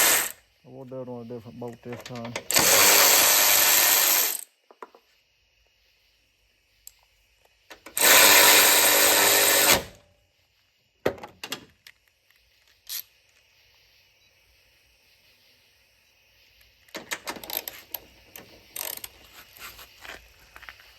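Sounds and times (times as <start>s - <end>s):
cordless ratchet driving bolt: 1.9s - 4.4s, 7.8s - 9.9s, 17.0s - 19.2s.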